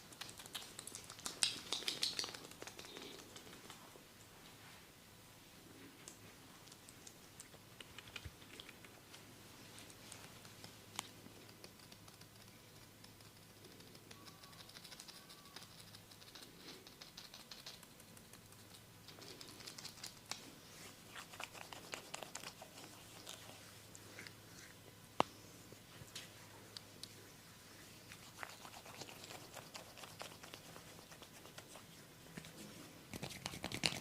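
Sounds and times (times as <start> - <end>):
scratching and crackling on hair: 0.0 - 4.0, 5.9 - 34.0
low steady hum: 0.0 - 34.0.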